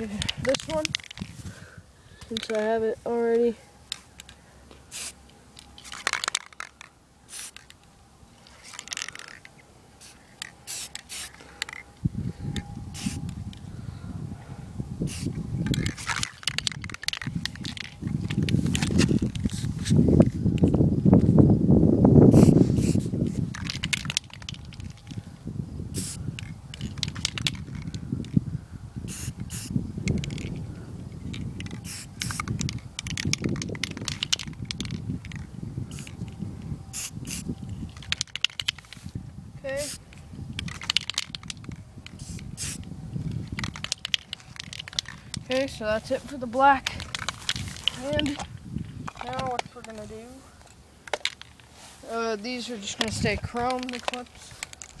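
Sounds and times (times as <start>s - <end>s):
spray paint hissing bursts: 4.9s - 5.2s, 7.3s - 7.7s, 10.0s - 11.8s, 12.9s - 13.2s, 15.0s - 17.0s, 18.3s - 20.0s, 22.3s - 24.4s, 25.9s - 27.7s, 29.0s - 30.3s, 31.7s - 33.2s, 35.9s - 36.2s, 36.9s - 37.5s, 39.8s - 40.0s, 42.1s - 42.9s.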